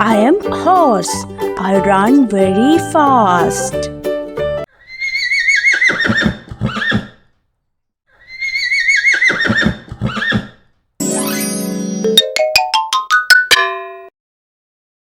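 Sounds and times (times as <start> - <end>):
horse neighing: 4.8 - 7.3, 8.2 - 10.7.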